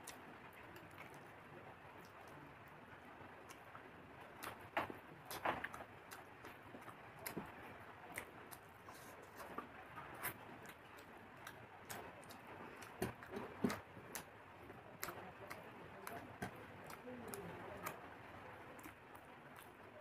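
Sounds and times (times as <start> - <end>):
chewing crunchy fried food: 0.0 - 20.0
fingers picking at food on plate: 3.5 - 18.0.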